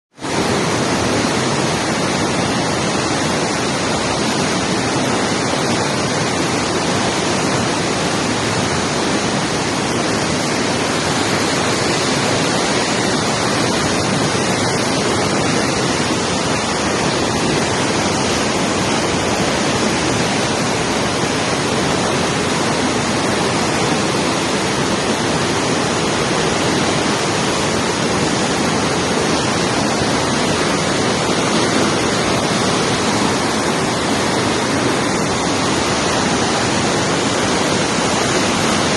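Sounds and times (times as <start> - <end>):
waterfall rushing: 0.1 - 38.9.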